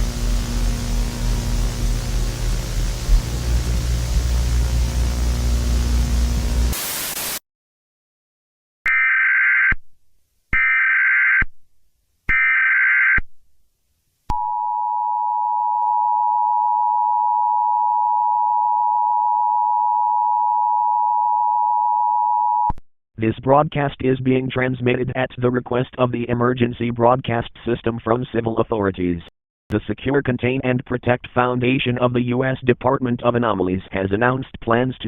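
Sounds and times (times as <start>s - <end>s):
low hum: 0.0s - 6.8s
static hiss: 0.0s - 7.4s.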